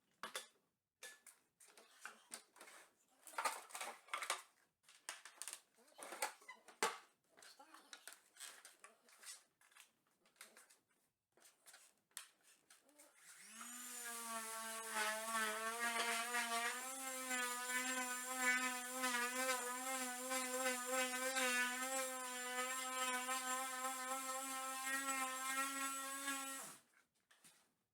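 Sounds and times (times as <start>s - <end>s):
power tool whining: 13.3s - 26.8s.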